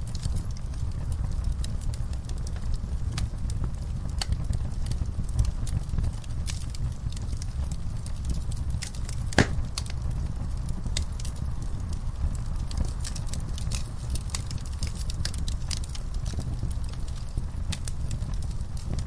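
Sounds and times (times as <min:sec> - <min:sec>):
crackles and snaps of logs: 0:00.0 - 0:19.0
wood fire burning: 0:00.0 - 0:19.0
loud pop from fire: 0:08.8 - 0:10.1.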